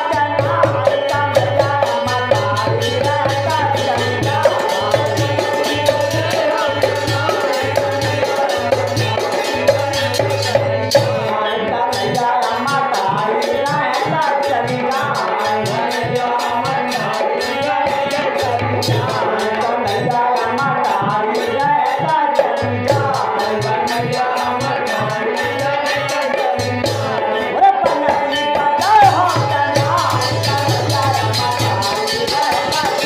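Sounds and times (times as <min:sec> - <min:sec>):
fast percussion beat: 0:00.0 - 0:33.0.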